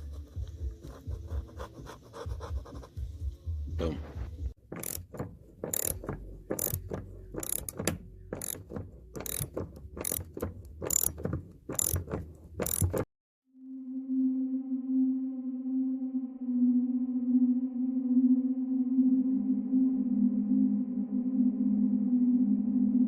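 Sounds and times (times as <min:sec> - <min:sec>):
sharp mechanical clicks: 0:04.8 - 0:13.1
soft sustained synth music: 0:13.5 - 0:23.0.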